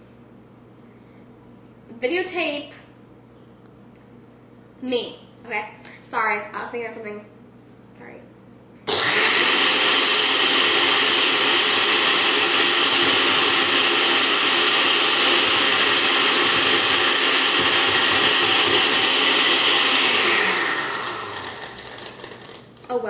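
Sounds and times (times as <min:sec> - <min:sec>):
blender crushing ice: 0:08.9 - 0:22.9.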